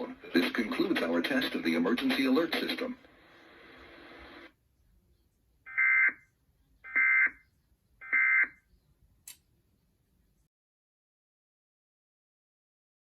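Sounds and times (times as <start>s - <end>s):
click: 9.2s - 9.5s.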